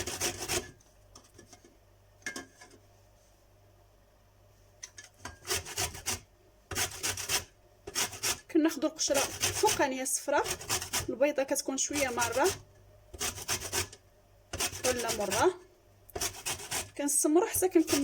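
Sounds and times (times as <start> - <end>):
lemon rasping on a grater: 0.0 - 0.7, 5.4 - 11.2, 11.8 - 12.6, 13.2 - 18.0.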